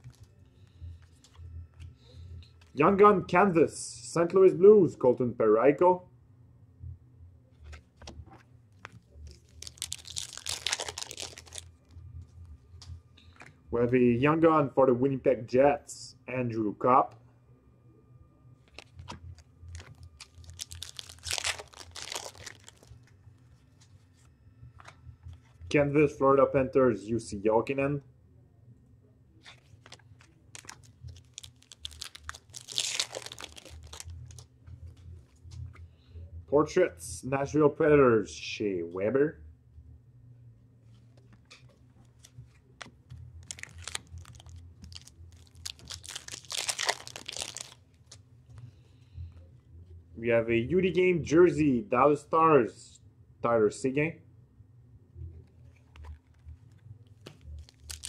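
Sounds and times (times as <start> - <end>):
foil wrapper tearing and crinkling: 0.0 - 0.3, 9.3 - 11.8, 18.7 - 23.1, 29.4 - 34.5, 42.1 - 48.2, 57.2 - 58.0.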